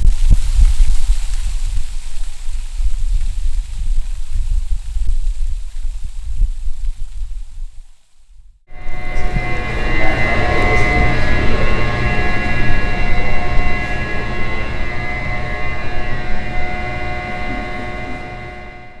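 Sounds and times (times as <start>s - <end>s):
machine rumbling and whining: 8.7s - 19.0s.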